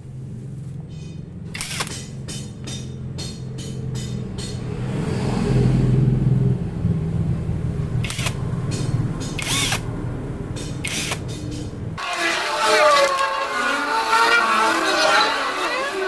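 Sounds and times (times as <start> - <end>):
motor running: 1.5 - 2.2, 8.0 - 9.9, 10.6 - 16.0
sharp clicks: 1.5 - 2.4, 8.0 - 9.9, 10.6 - 11.8.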